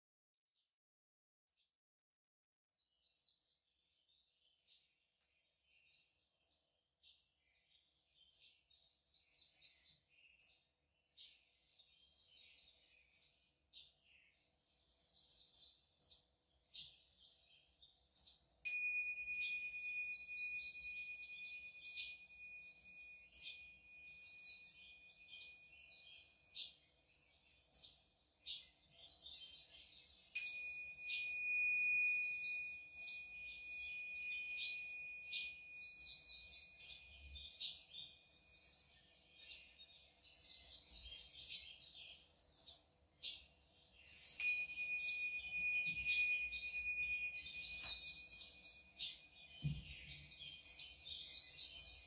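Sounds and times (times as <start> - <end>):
birds chirping and singing: 5.7 - 52.0
metal chime struck ringing: 18.6 - 24.9, 30.4 - 37.0, 44.4 - 49.1.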